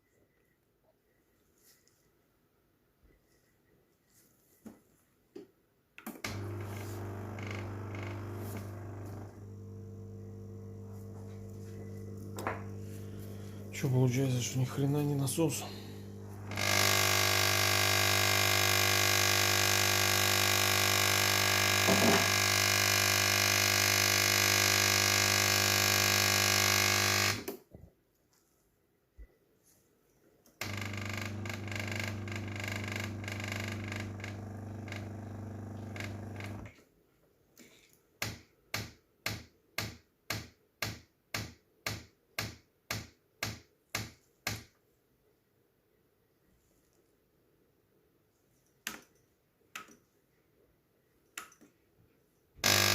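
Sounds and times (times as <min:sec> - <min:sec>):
espresso machine pump buzzing: 0:06.3 - 0:14.6, 0:15.4 - 0:27.4, 0:30.6 - 0:36.7, 0:52.6 - 0:52.9.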